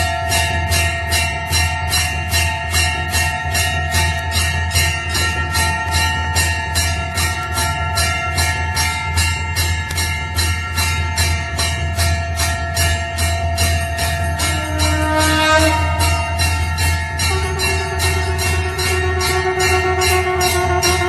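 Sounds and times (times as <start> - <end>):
temple bell ringing: 0.0 - 21.0
lower held tone: 14.3 - 21.0.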